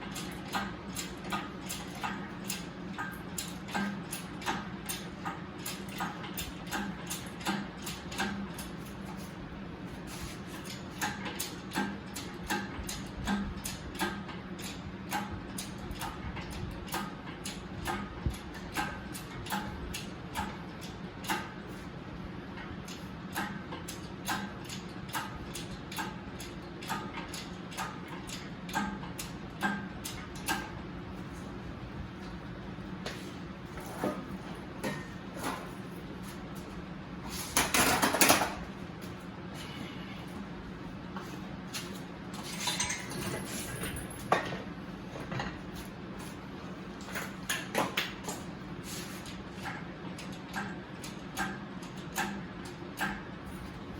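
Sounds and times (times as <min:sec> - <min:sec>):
steady low hum: 0:00.0 - 0:53.9
metal tools clinking and clanking: 0:42.4 - 0:44.6.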